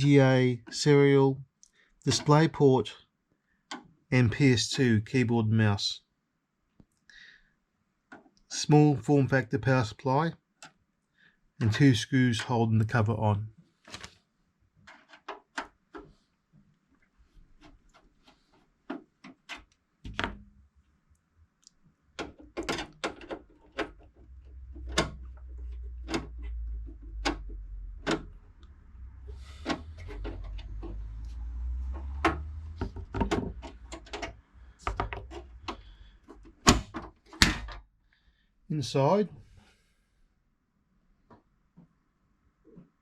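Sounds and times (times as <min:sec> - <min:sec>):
computer case clicks and knocks: 0:32.2 - 0:35.4, 0:36.5 - 0:37.8.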